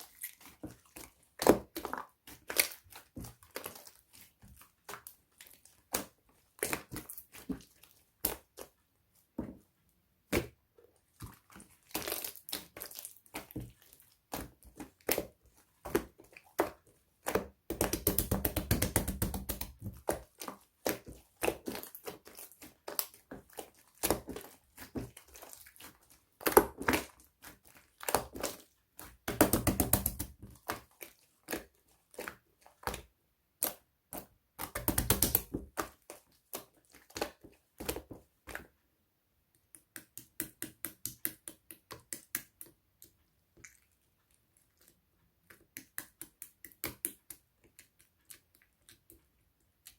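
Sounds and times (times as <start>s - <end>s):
slime clicking and popping: 33.6s - 35.8s.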